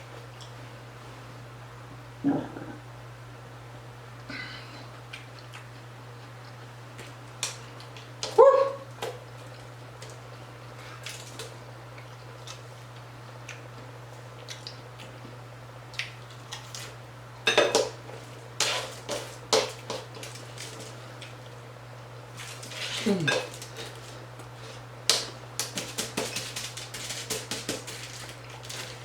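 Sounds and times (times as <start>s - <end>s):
taco shells crunching: 22.3s - 29.0s.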